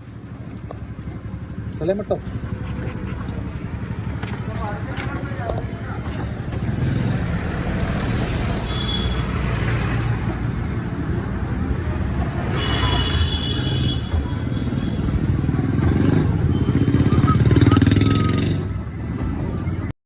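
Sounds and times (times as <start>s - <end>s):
passing vehicles rumble: 0.0s - 19.9s.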